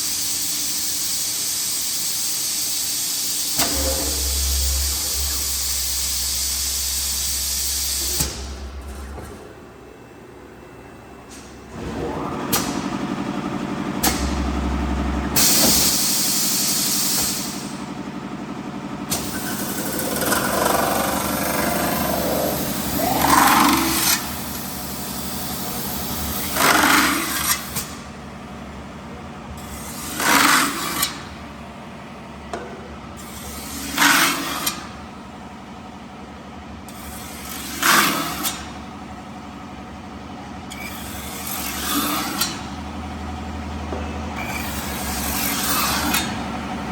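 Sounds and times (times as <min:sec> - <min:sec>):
loud bursts with rising squeal: 0:03.6 - 0:08.2
metal spinning lathe humming: 0:19.5 - 0:25.0.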